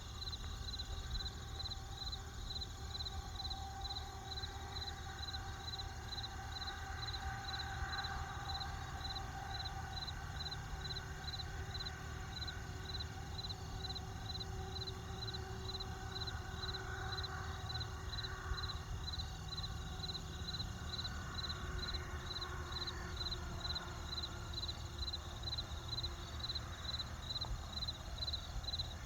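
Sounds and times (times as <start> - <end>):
crickets chirping: 0.0 - 29.0.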